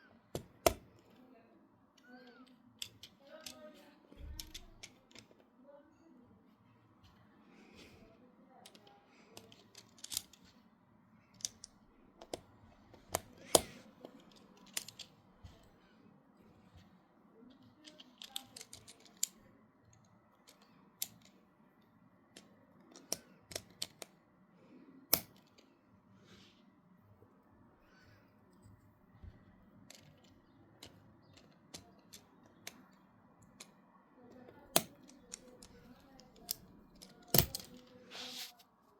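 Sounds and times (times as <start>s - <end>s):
plastic bricks clicking: 2.0s - 3.7s, 4.3s - 5.3s, 8.7s - 10.5s, 13.0s - 15.6s, 17.8s - 19.4s, 22.4s - 24.1s, 29.8s - 33.7s, 34.4s - 38.0s
plastic bricks snapping: 34.7s - 37.8s.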